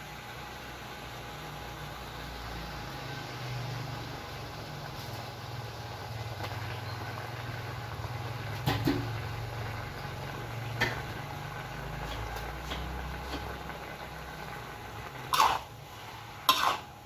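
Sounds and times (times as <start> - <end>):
utensils clinking on cookware: 16.4 - 16.9.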